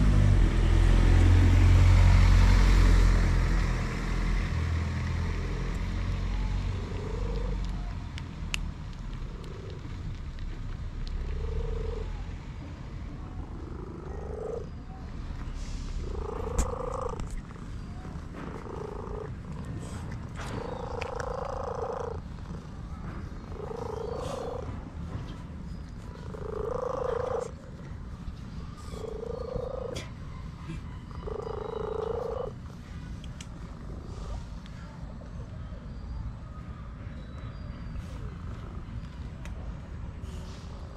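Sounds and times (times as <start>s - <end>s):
cat purring: 5.1s - 7.9s, 13.2s - 14.7s, 16.0s - 24.8s, 26.1s - 28.2s.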